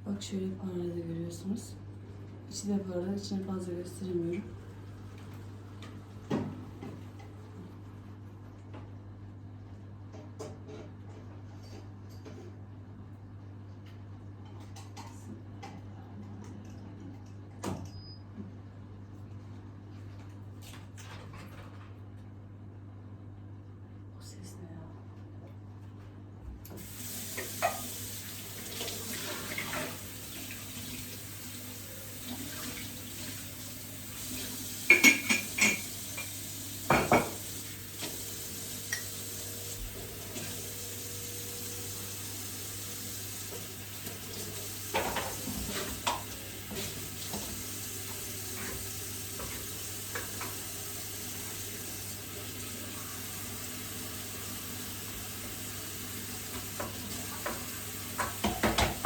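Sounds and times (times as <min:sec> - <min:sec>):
dishes and utensils clattering: 0:34.8 - 0:38.2, 0:44.9 - 0:47.5, 0:56.6 - 0:59.0.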